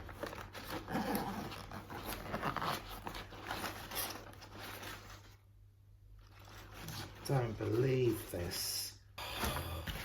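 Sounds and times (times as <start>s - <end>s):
packaging rustling in cardboard box: 0.0s - 5.4s.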